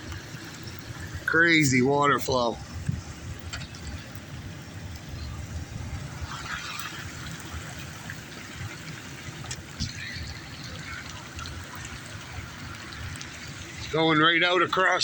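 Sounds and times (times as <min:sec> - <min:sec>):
rain runoff rushing across road: 0:00.0 - 0:15.0
wind rumble on microphone: 0:02.2 - 0:14.0.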